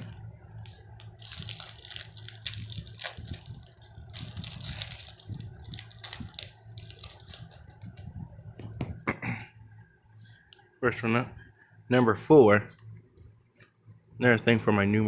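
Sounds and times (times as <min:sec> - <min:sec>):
wrapper tearing and crinkling: 0:00.0 - 0:08.1.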